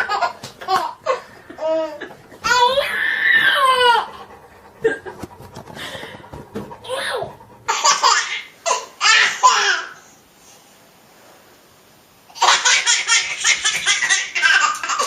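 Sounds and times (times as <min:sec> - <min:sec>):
baby laughing: 0:00.0 - 0:10.0, 0:12.3 - 0:15.0.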